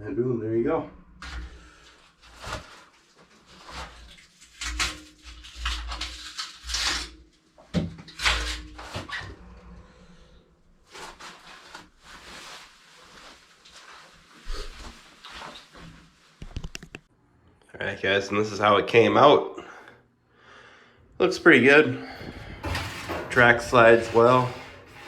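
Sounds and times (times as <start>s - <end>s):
glass shower door sliding on rail: 22.0s - 25.0s.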